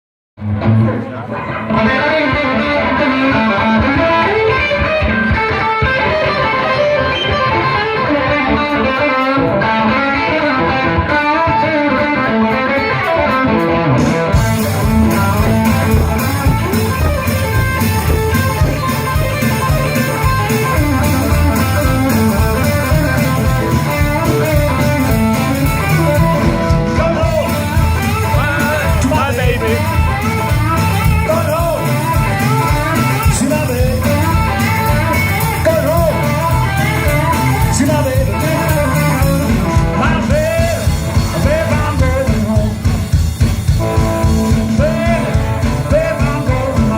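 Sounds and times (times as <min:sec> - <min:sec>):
bass guitar: 0:00.4 - 0:46.9
electric guitar: 0:00.4 - 0:46.9
steady drum beat: 0:14.0 - 0:46.9.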